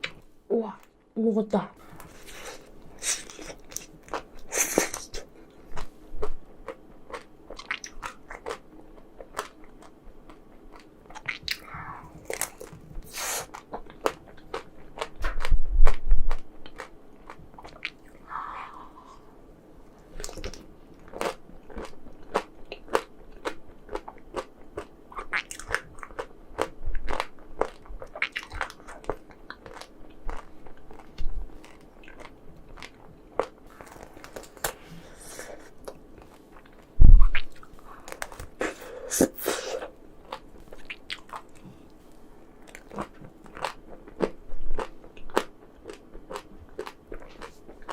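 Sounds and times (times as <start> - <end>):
crunching frozen chocolate: 11.6 - 14.7, 27.1 - 35.8
chewing: 20.0 - 38.5, 42.6 - 47.9.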